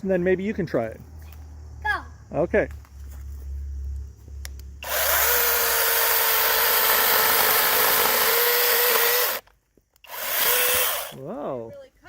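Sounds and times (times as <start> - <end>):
mini chainsaw cutting branch: 4.8 - 11.3.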